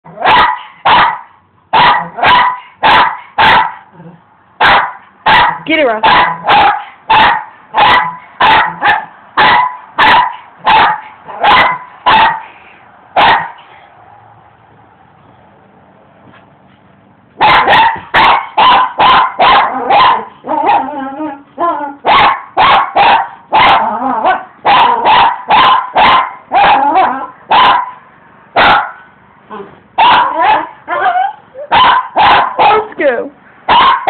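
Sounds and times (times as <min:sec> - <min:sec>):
dog barking: 0:00.1 - 0:03.9, 0:04.6 - 0:12.5, 0:13.2 - 0:13.6, 0:17.4 - 0:21.1, 0:22.0 - 0:28.0, 0:28.6 - 0:29.1, 0:30.0 - 0:32.9, 0:33.7 - 0:34.0
dog growling: 0:03.8 - 0:04.3, 0:19.6 - 0:22.0, 0:23.7 - 0:25.0.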